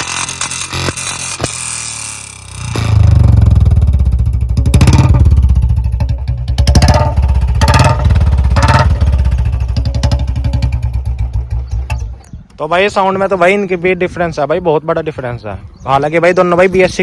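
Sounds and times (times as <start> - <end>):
motorcycle engine revving: 0.0 - 12.3.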